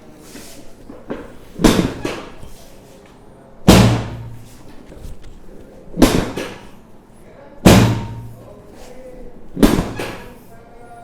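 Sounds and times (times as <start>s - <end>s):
heavy thumps on treatment table: 1.1s - 2.4s, 6.0s - 6.7s, 7.7s - 8.4s, 9.6s - 10.3s.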